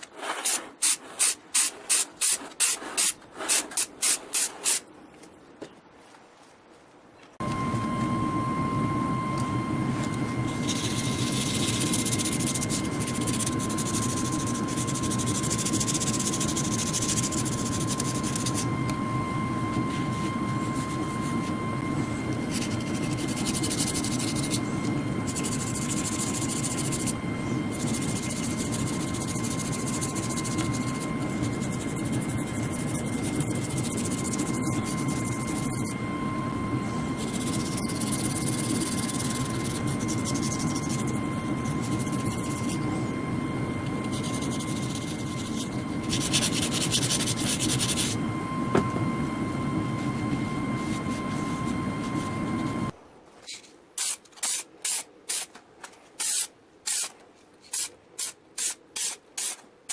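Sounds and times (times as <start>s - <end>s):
machine high whine: 7.4s - 53.0s.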